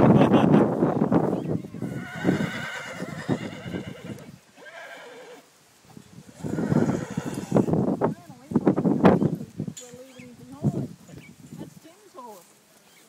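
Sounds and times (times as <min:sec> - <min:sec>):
wind buffeting microphone: 0:00.0 - 0:04.4, 0:05.9 - 0:12.1
horse whinnying: 0:01.8 - 0:05.5, 0:06.3 - 0:07.7.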